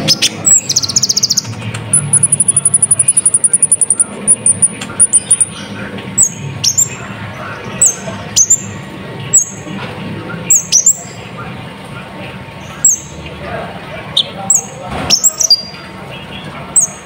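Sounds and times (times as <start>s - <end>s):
bird high trill: 0.0s - 5.6s
sharp high bird chips: 0.0s - 7.0s.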